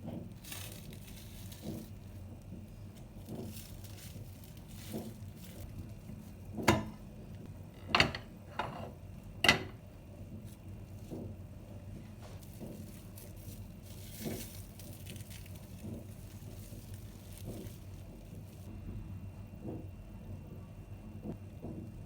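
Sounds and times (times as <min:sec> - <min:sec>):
dishes and utensils clinking: 0:07.8 - 0:09.8.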